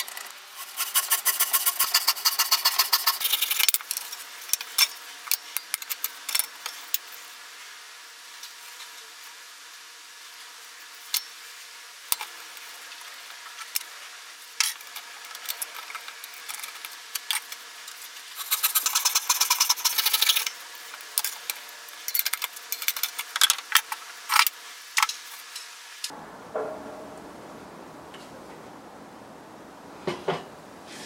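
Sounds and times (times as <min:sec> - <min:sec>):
rapid scraping strokes: 0:00.5 - 0:03.7.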